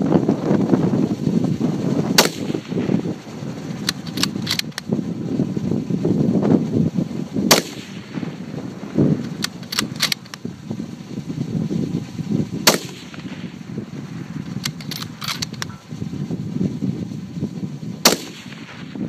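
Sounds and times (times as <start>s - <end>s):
wind rumble on microphone: 0.0s - 19.0s
rifle shots: 2.1s - 3.2s, 3.8s - 4.9s, 7.5s - 8.5s, 9.3s - 10.4s, 12.6s - 13.7s, 14.6s - 15.8s, 18.0s - 19.0s.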